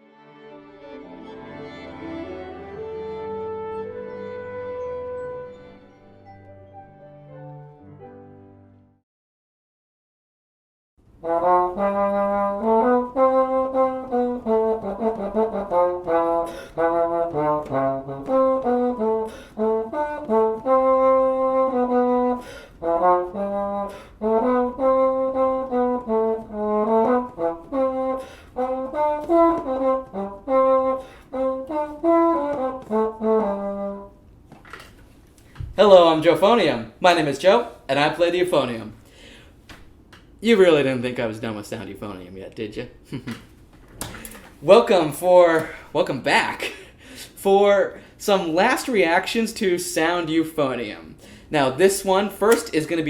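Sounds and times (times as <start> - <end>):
euphonium playing lively melody: 0.1 - 7.9, 11.2 - 34.1.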